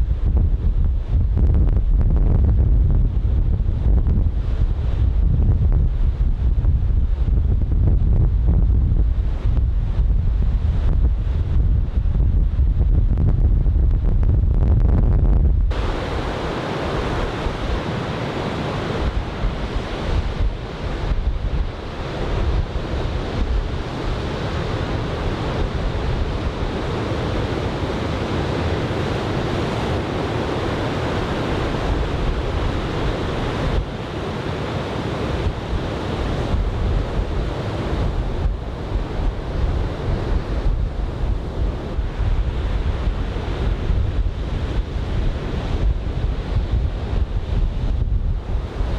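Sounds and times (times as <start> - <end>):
wind buffeting microphone: 0.0 - 48.9
breaking surf: 15.7 - 47.2.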